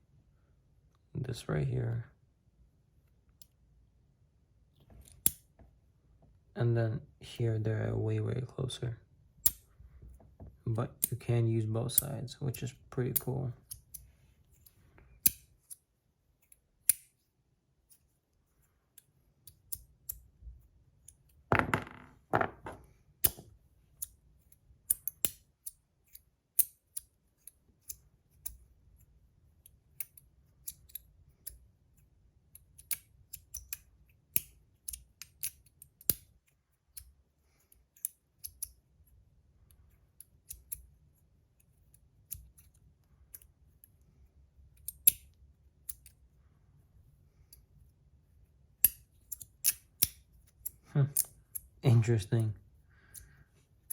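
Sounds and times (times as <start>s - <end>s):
handling noise: 21.5s - 22.9s.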